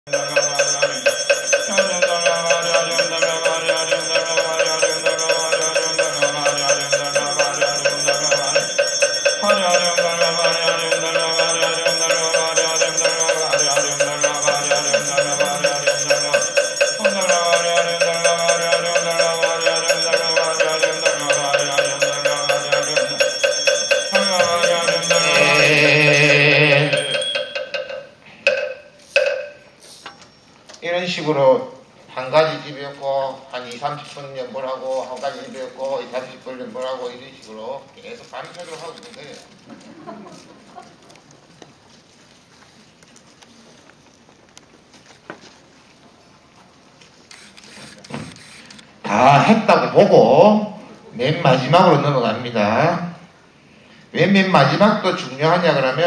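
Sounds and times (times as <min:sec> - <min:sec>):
men chanting: 0:00.1 - 0:27.9
fast steady percussion beat: 0:00.1 - 0:29.8
continuous bell-like ringing: 0:00.1 - 0:30.8.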